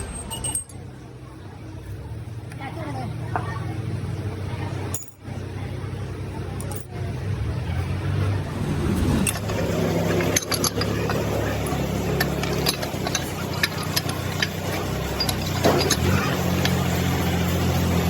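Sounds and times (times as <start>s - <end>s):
sharp clicks and clinks: 0.0s - 0.9s, 9.0s - 18.0s
low mechanical hum: 0.0s - 18.0s.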